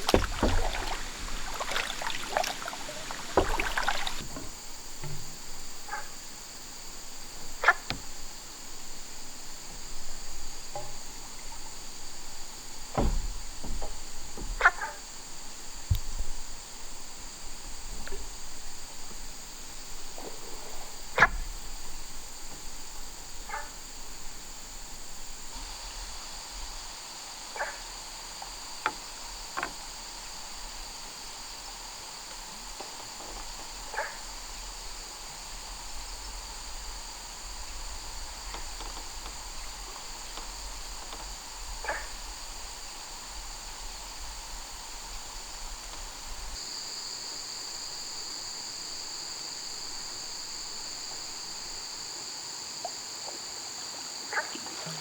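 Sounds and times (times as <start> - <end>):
short sharp knocks: 0.0 - 5.4, 12.9 - 15.0
crickets chirring: 0.0 - 55.0.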